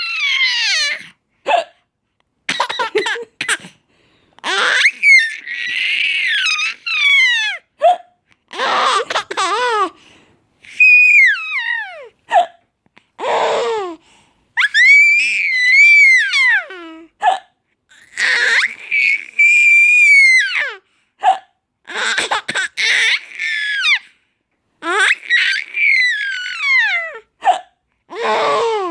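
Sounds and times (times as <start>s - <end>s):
baby laughing: 2.5s - 3.7s, 8.5s - 9.9s.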